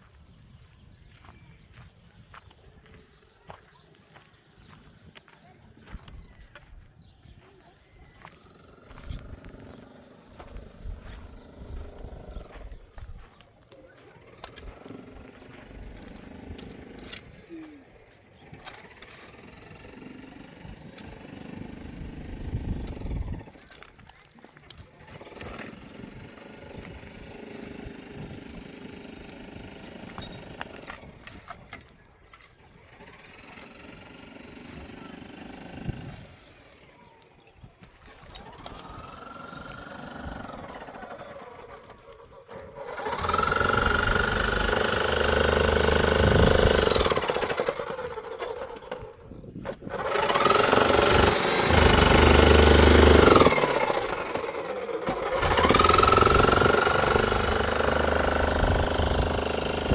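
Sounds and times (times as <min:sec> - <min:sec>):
faint machine sounds: 0:00.0 - 0:59.9
motor machine high whine: 0:37.8 - 0:59.9.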